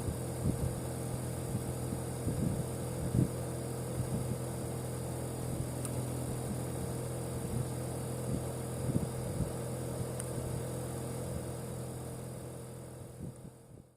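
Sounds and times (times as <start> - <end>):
air conditioner compressor humming: 0.0 - 13.9.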